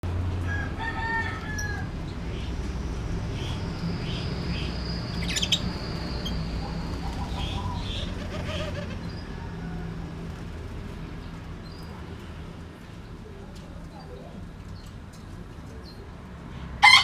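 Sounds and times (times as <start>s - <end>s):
birds chirping: 3.3s - 9.6s
wings flapping clatter: 6.7s - 8.8s.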